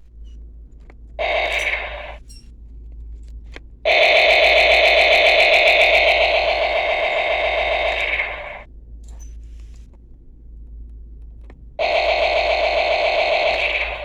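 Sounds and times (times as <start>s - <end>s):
toy gun electronic buzz: 1.2s - 2.3s, 3.9s - 8.7s, 11.8s - 14.0s.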